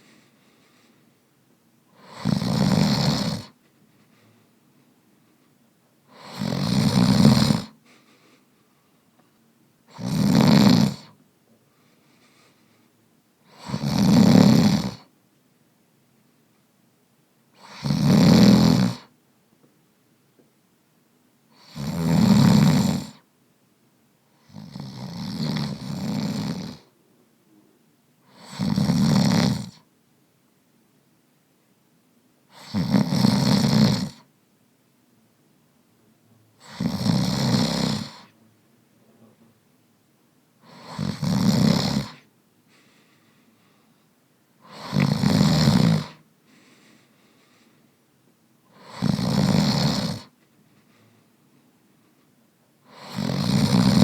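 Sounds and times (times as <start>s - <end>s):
man snoring: 2.0s - 3.6s, 6.1s - 7.8s, 9.9s - 11.2s, 13.4s - 15.1s, 17.6s - 19.1s, 21.5s - 23.2s, 24.4s - 26.9s, 28.3s - 29.8s, 32.5s - 34.3s, 36.6s - 38.4s, 40.6s - 42.3s, 44.6s - 46.2s, 48.7s - 50.3s, 52.8s - 54.0s.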